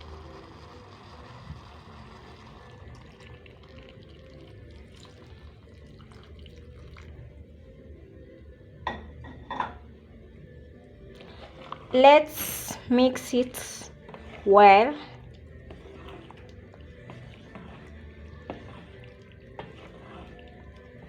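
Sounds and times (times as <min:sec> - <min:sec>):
liquid pouring into pot: 0:00.0 - 0:07.4, 0:15.1 - 0:21.0.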